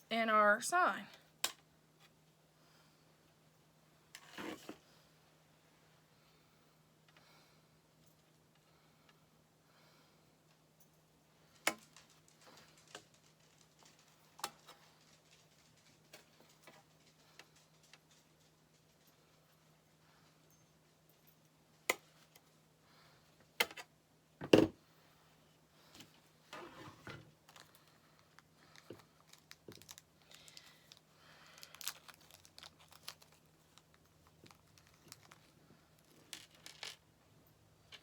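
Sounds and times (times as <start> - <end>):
crinkling and rustling: 11.4 - 19.9, 25.8 - 37.1.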